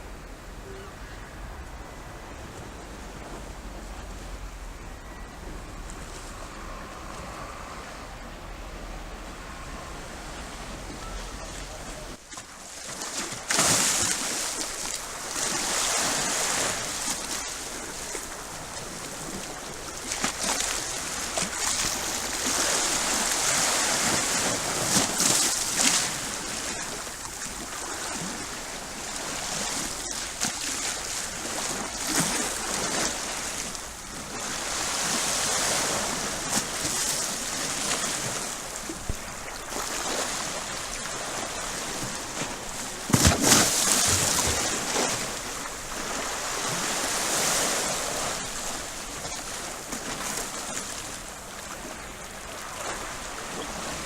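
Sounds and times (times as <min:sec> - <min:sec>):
sea waves breaking: 0:00.0 - 0:54.0.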